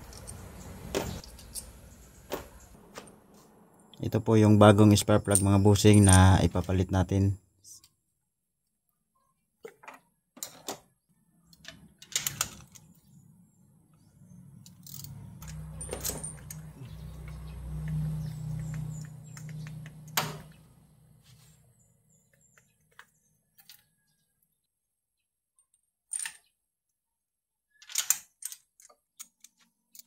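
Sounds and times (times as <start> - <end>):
hand tools clinking on metal: 5.1 - 6.5, 14.7 - 19.5.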